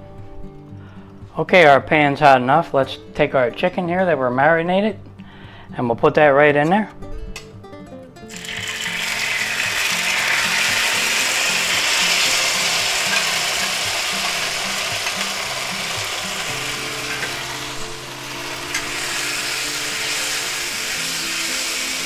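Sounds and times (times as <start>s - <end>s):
chicken sizzling in hot oil: 8.3s - 22.0s.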